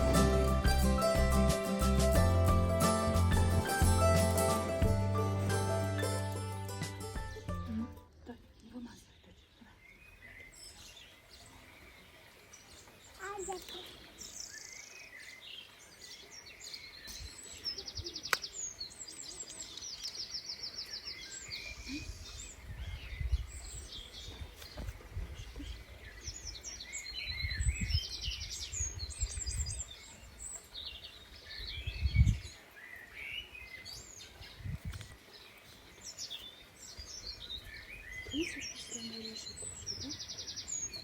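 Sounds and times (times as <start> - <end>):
small birds chirping and trilling: 8.5 - 41.0.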